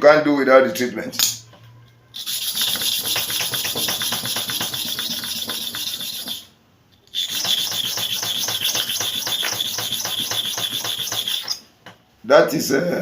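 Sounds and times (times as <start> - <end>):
clipper blade scraping on sharpening surface: 7.2 - 11.6.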